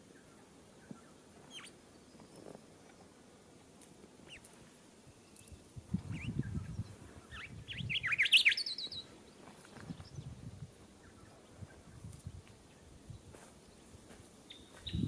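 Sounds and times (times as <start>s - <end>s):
bird chirping and whistling: 1.5s - 1.7s, 7.4s - 9.0s.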